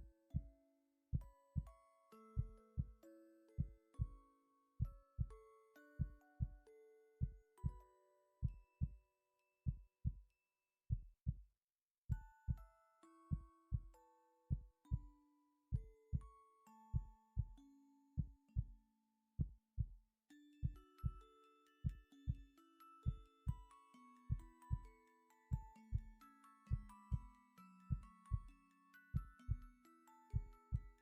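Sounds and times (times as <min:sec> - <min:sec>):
chime-like music notes: 0:00.0 - 0:10.4, 0:12.1 - 0:19.1, 0:20.3 - 0:31.0
heartbeat thumps: 0:10.9 - 0:11.4.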